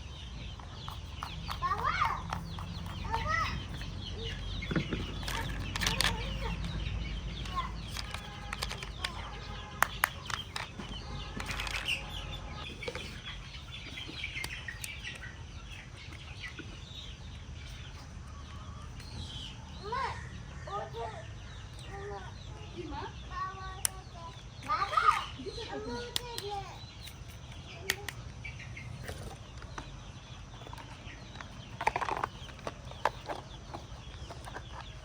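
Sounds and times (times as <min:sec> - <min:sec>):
birds chirping and calling: 0:00.0 - 0:35.0
sharp clicks: 0:00.5 - 0:12.2.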